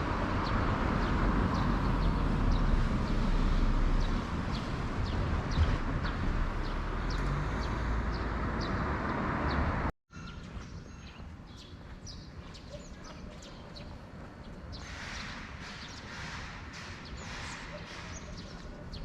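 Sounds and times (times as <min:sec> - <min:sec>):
low rumble of vehicles: 0:00.0 - 0:19.0
birds chirping: 0:00.3 - 0:19.0.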